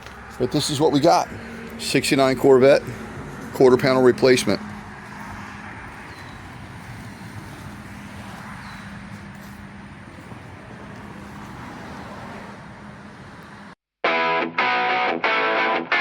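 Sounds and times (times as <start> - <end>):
distant road traffic: 0.0 - 13.8
distorted electric guitar music: 14.1 - 16.0.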